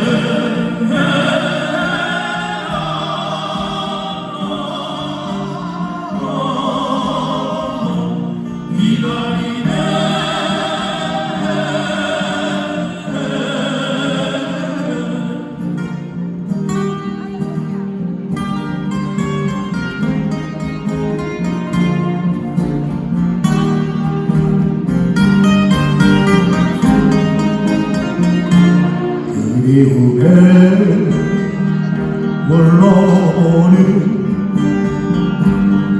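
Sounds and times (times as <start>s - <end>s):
group of voices singing: 0.0s - 16.6s, 26.4s - 35.9s
strummed acoustic guitars: 0.0s - 35.9s.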